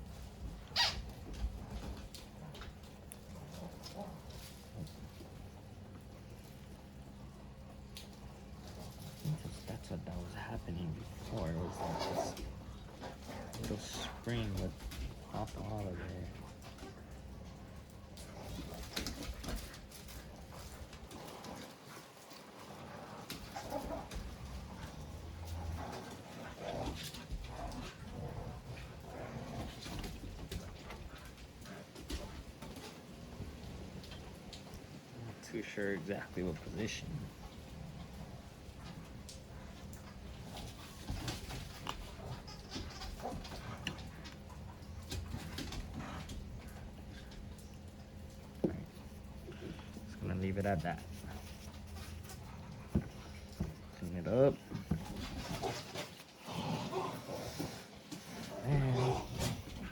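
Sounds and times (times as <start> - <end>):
dogs making small noises: 0.0 - 59.9
dog whining: 0.7 - 1.1.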